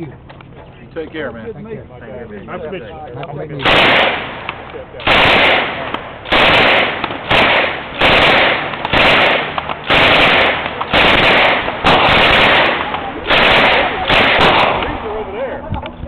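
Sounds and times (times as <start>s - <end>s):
handgun shots: 3.6s - 15.0s.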